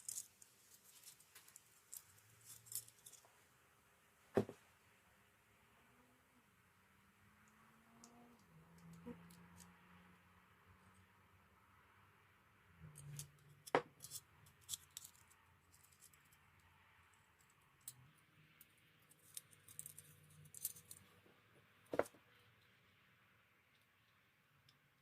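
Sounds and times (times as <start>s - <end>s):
small parts clicking and tapping: 0.0s - 3.3s, 12.9s - 21.2s.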